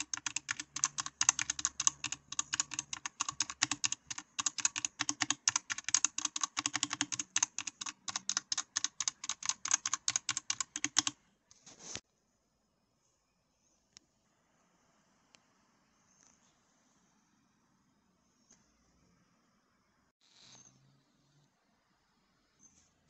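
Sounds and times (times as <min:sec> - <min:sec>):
fast typing on mechanical keyboard: 0:00.0 - 0:11.2.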